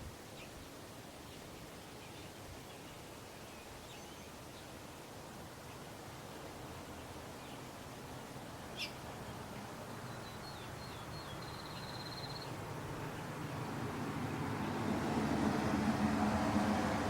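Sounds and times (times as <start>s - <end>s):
background hiss: 0.0s - 17.0s
small bird chirping and trilling: 8.7s - 13.3s.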